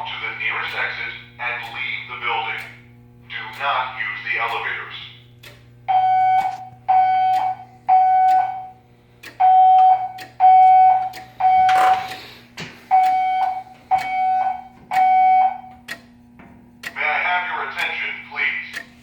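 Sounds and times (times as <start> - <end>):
fire alarm beeping: 3.5 - 12.1, 12.8 - 16.0.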